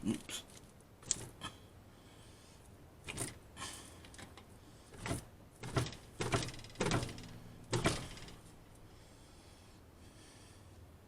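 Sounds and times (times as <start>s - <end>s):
sheet metal clunks and creaks: 5.0s - 8.4s.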